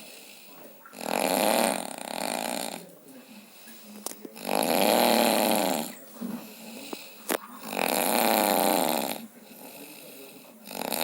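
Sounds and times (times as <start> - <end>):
quiet breathing: 0.0 - 11.0
person snoring loudly: 1.0 - 2.8, 4.4 - 5.9, 7.7 - 9.2.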